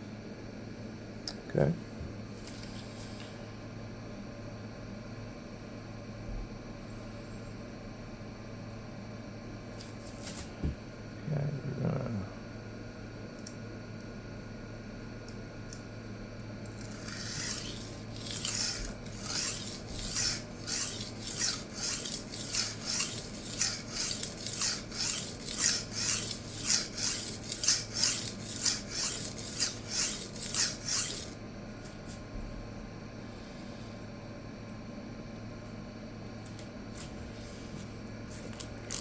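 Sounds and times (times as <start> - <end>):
knife scraping on sharpening stone: 16.8 - 31.4.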